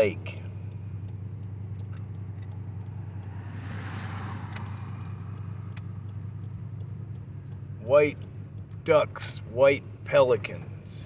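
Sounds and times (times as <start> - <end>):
car engine rumble: 0.0 - 11.0
road noise: 0.0 - 11.0
rushing noise: 3.0 - 5.7.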